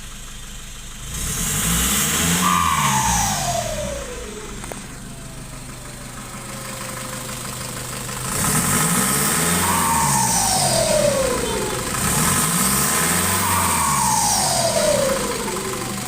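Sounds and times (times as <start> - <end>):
diesel engine revving and idling: 0.0 - 16.0
turbo whine falling in pitch: 2.2 - 6.7, 9.1 - 16.0.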